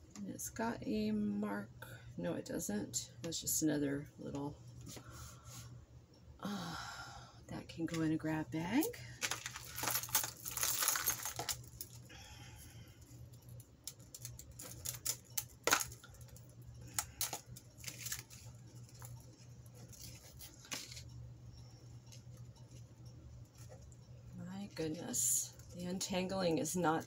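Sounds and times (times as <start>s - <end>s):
jewelry chains rustling: 9.2s - 12.0s, 13.4s - 16.3s
metal and beads clicking: 9.2s - 12.0s, 13.1s - 21.0s.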